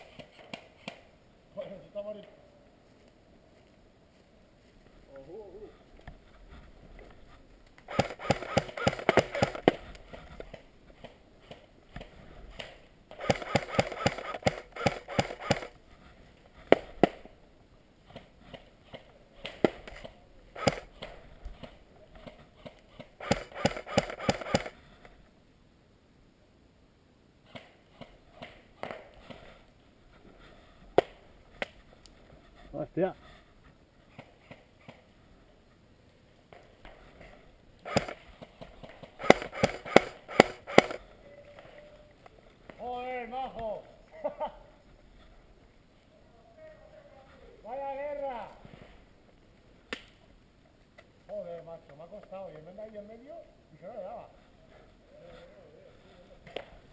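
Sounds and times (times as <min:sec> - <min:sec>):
airsoft guns firing: 0:07.9 - 0:09.8, 0:12.6 - 0:15.8, 0:19.4 - 0:21.2, 0:22.3 - 0:24.8, 0:37.8 - 0:38.2, 0:38.8 - 0:41.1.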